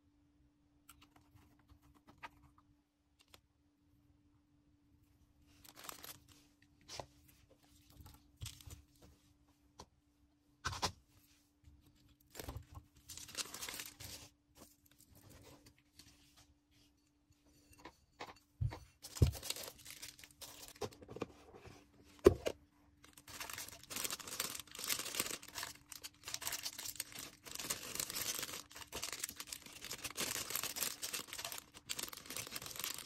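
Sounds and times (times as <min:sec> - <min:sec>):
packaging crinkling and tearing: 0:05.6 - 0:06.4, 0:12.2 - 0:14.2, 0:19.1 - 0:21.0, 0:23.0 - 0:33.0.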